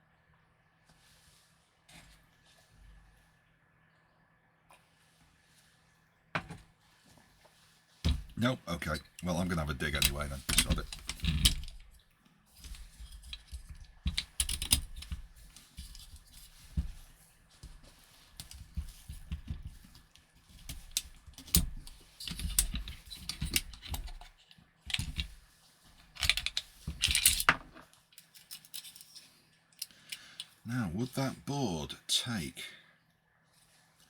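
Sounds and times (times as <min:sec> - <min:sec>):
small parts clicking and rattling: 0:08.9 - 0:17.0, 0:18.4 - 0:25.4, 0:26.0 - 0:30.6.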